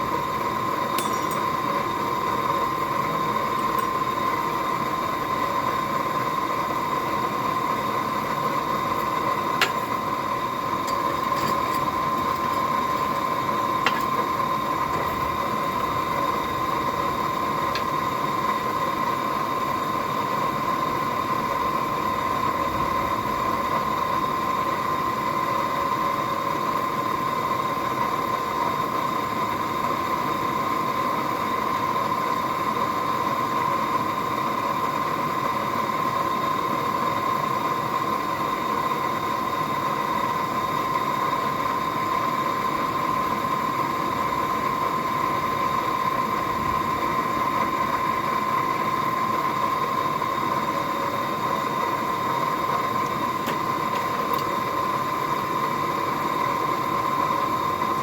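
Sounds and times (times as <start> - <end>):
constant hum: 0.0 - 19.8, 49.5 - 58.0.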